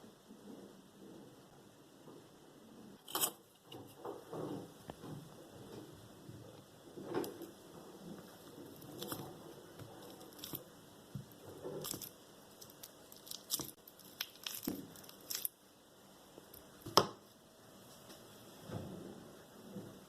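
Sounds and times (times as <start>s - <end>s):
food being prepared by hand: 0.1s - 20.0s.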